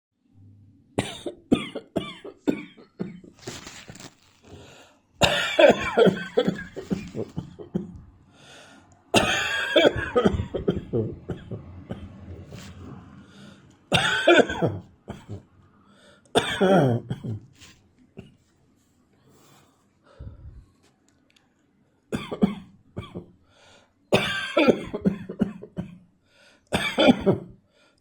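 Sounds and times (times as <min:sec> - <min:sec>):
person coughing: 0:01.0 - 0:03.3, 0:05.2 - 0:08.0, 0:09.2 - 0:12.7, 0:13.9 - 0:15.4, 0:16.4 - 0:17.5, 0:22.2 - 0:23.3, 0:24.2 - 0:26.0, 0:26.8 - 0:27.6.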